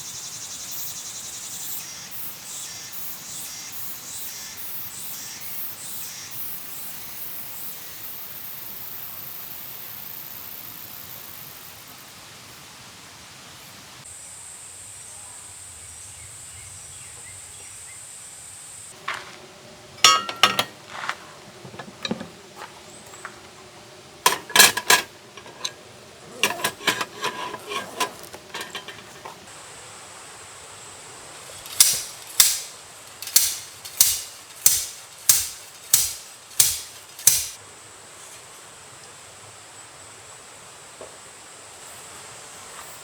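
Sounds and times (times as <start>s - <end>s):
high insect trill: 0.0s - 12.7s, 18.0s - 38.3s
outdoor hiss: 0.0s - 43.0s
hard objects clinking and clattering: 20.0s - 22.4s, 24.2s - 29.5s.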